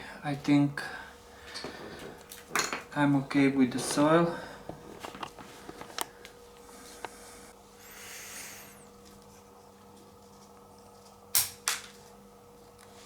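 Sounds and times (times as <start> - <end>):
faint steady hum: 0.0 - 13.0
soft brushing hiss: 2.9 - 5.7.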